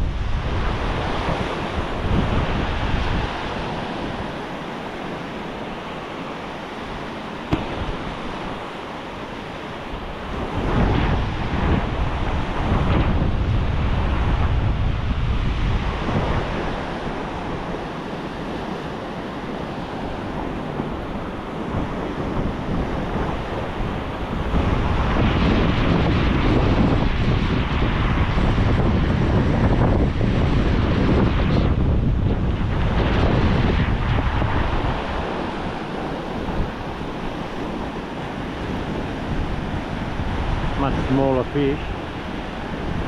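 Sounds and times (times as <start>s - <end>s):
ocean surf on beach: 0.0s - 43.0s
wind buffeting microphone: 0.0s - 43.0s.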